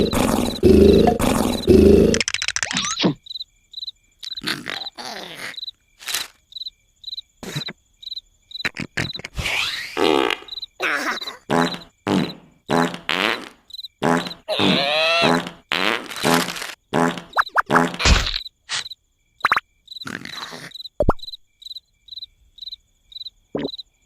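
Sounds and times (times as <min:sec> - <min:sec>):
cartoon character snoring: 0:00.0 - 0:02.2, 0:08.7 - 0:18.0, 0:20.1 - 0:20.8
cricket chirping: 0:00.0 - 0:24.0.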